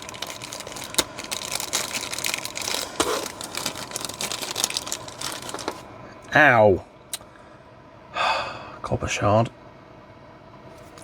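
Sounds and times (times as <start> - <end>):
packets crinkling and rustling: 0.0 - 5.9.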